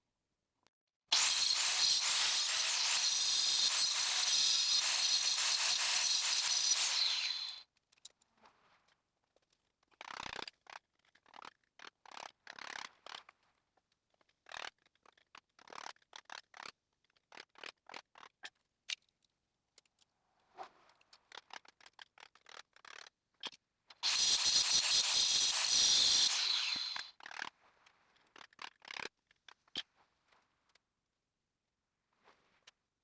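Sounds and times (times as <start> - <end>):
blade sawing metal bolt: 1.1 - 7.6, 24.0 - 27.1
power tool whining: 1.1 - 7.6, 24.0 - 27.1.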